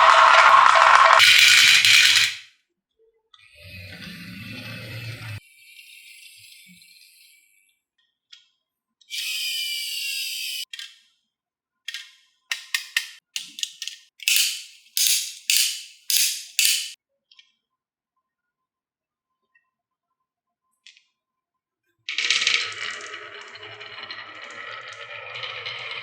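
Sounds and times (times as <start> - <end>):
marbles rolling on wooden track: 0.0 - 2.4, 22.1 - 26.0
marble run clicks: 1.2 - 2.4
marbles clacking on wood: 1.2 - 2.4, 12.5 - 17.0, 22.1 - 24.7.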